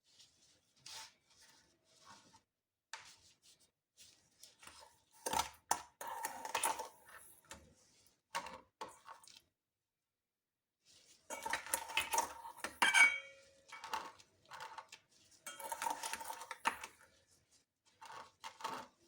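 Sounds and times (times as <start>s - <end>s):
kitchen utensils clinking: 11.3s - 14.0s, 15.5s - 17.0s.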